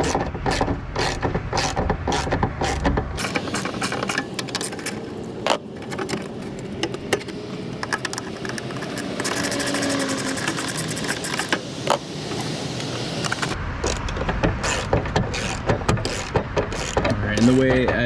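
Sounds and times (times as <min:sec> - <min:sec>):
ratchet wrench clicking: 0:07.8 - 0:14.0, 0:14.6 - 0:17.7.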